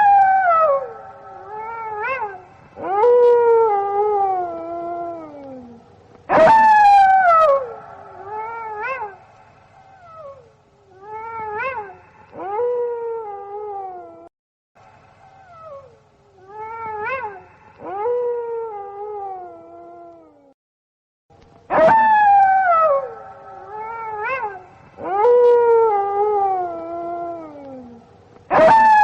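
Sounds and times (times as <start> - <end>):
wolves howling: 0.0 - 9.3, 21.7 - 29.0.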